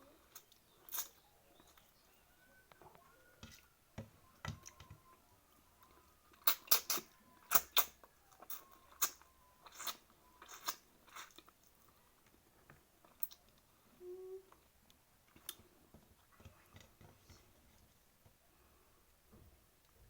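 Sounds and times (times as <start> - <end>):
person chewing food: 5.8 - 13.7
mouth clicks and crunches: 6.3 - 12.4.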